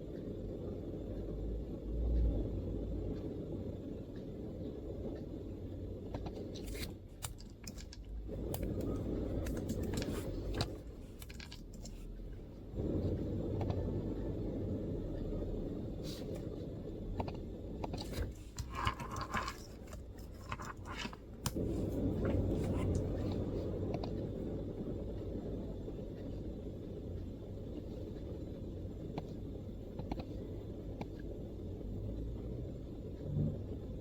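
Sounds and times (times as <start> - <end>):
low rumble: 0.0 - 7.0, 7.8 - 34.0
laptop keyboard keystrokes: 6.2 - 12.0.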